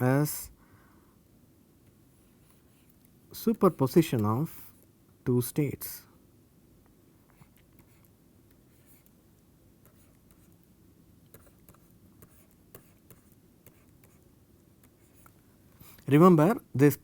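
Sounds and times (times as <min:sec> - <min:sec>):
pen scratching on paper: 0:07.4 - 0:08.1, 0:08.7 - 0:09.1, 0:09.8 - 0:10.6, 0:11.3 - 0:14.2, 0:14.8 - 0:15.3.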